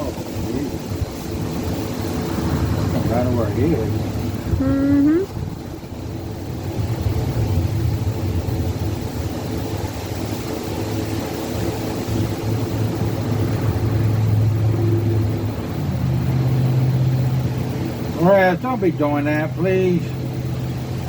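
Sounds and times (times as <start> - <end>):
wind rushing: 0.0 - 18.5
car engine drone: 0.0 - 21.0
road noise: 0.0 - 21.0.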